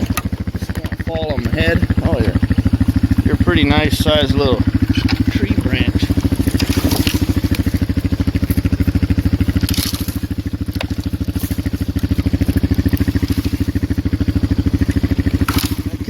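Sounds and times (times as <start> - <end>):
atv engine running: 0.0 - 16.0
branches brushing vehicle: 0.0 - 16.0.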